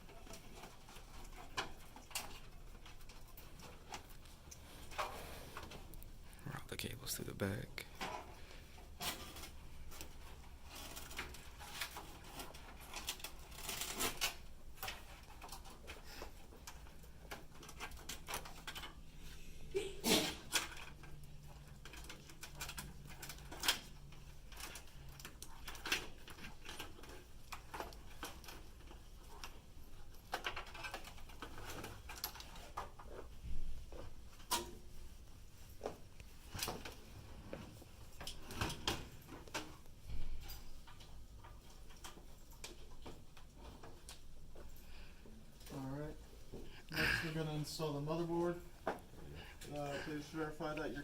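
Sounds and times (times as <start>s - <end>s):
cables clicking against metal case: 9.0s - 19.0s, 20.5s - 33.3s.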